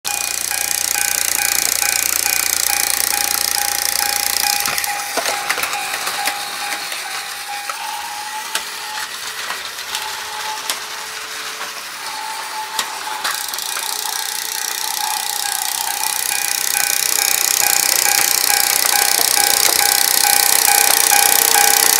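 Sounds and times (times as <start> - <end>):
toy train motor whine: 0.1 - 21.9.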